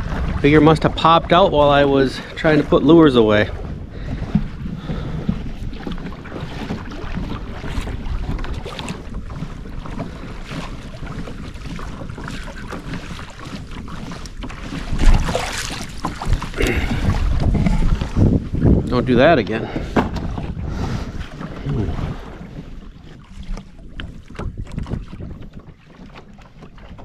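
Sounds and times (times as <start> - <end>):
water against kayak hull: 0.0 - 27.0
wind buffeting microphone: 0.0 - 27.0
knocks on kayak: 19.7 - 20.5.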